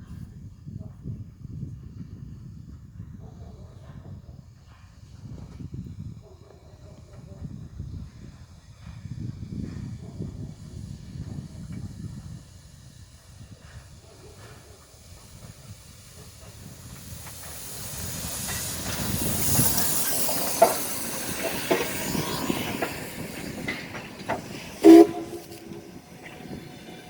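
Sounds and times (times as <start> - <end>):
steam locomotive venting steam: 0.1 - 27.0
loud pitched whistle blast: 24.8 - 25.9.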